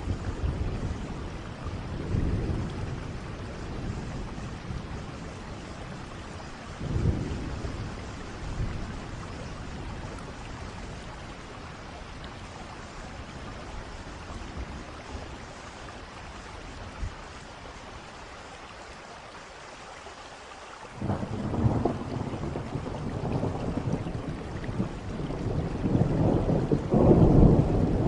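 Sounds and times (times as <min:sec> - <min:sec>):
steady rain: 0:00.0 - 0:28.0
rolls of thunder: 0:06.8 - 0:10.2, 0:21.0 - 0:28.0.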